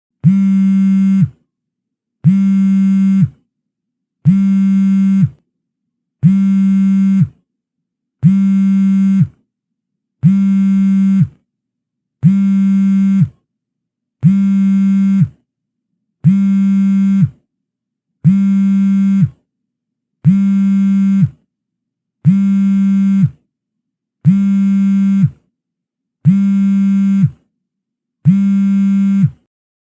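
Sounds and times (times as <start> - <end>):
phone vibrating buzz: 0.2 - 1.4, 2.2 - 3.4, 4.2 - 5.4, 6.2 - 7.4, 8.2 - 9.4, 10.2 - 11.4, 12.2 - 13.4, 14.2 - 15.4, 16.2 - 17.4, 18.2 - 19.4, 20.2 - 21.4, 22.2 - 23.4, 24.2 - 25.4, 26.2 - 27.4, 28.3 - 29.5.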